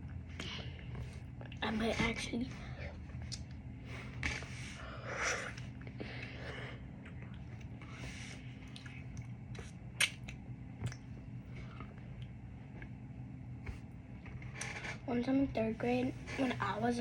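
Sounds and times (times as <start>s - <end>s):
person chewing: 8.6s - 12.9s.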